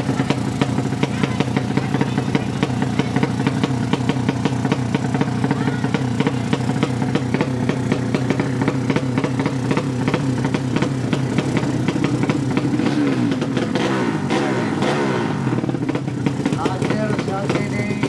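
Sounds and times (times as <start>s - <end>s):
exhaust crackle: 0.0s - 18.0s
motorcycle engine idling unevenly: 0.0s - 18.0s.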